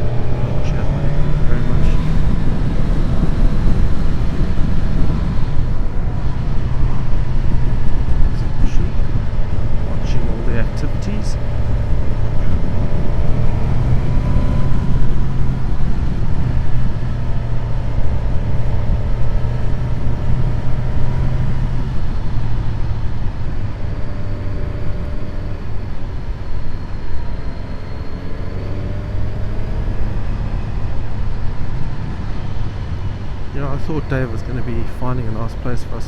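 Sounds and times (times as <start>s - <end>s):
motorcycle engine running: 0.0s - 28.2s
wind noise: 0.0s - 36.0s.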